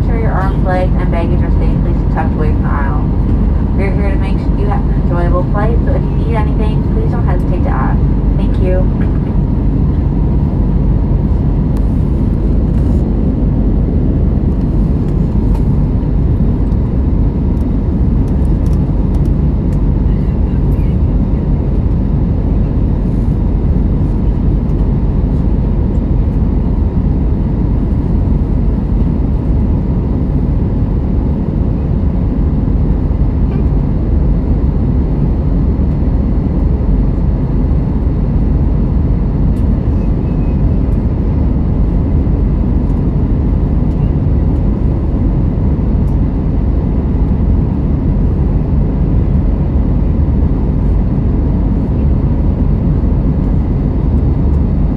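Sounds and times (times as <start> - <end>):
faint steady tones: 0.0 - 9.5
airliner cabin engine rumble: 0.0 - 54.9.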